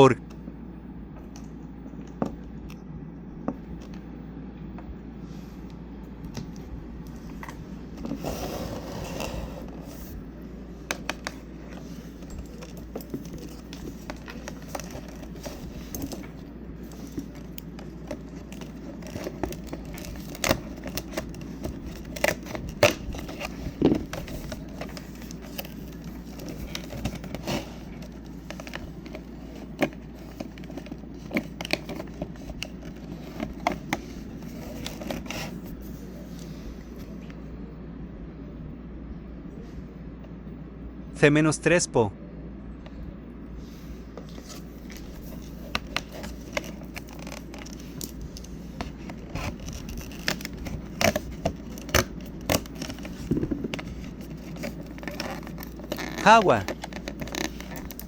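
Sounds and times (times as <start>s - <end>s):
packaging clicks taps and rustles: 10.9s - 35.7s, 44.2s - 58.0s.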